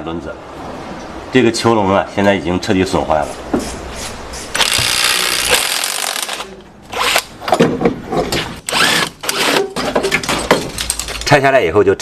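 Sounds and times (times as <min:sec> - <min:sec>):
power tool running: 0:04.6 - 0:06.4, 0:08.7 - 0:09.6
metal parts knocking and clattering: 0:09.3 - 0:11.4.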